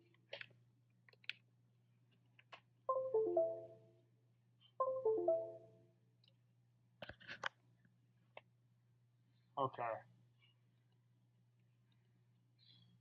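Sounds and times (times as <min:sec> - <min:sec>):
computer notification chime: 0:02.9 - 0:03.8, 0:04.8 - 0:05.8.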